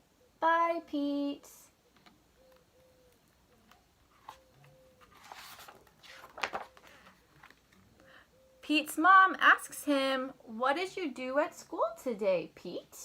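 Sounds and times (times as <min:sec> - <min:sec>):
paper page rustling: 0:04.1 - 0:07.8.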